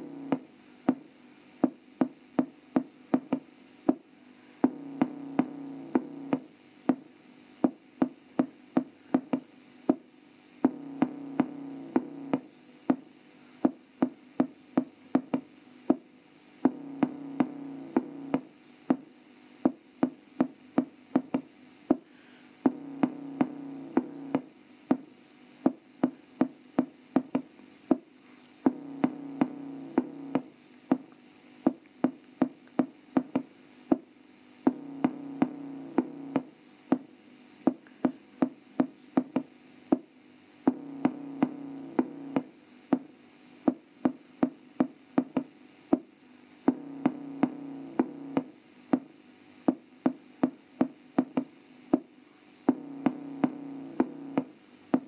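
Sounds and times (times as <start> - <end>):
electronic beat with sharp hits: 10.6 - 13.0, 46.7 - 49.1, 49.7 - 55.0.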